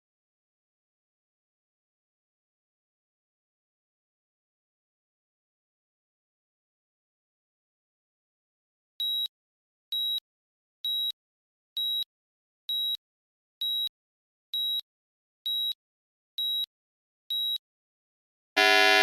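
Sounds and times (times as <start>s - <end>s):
electronic timer beeping: 18.6s - 19.0s.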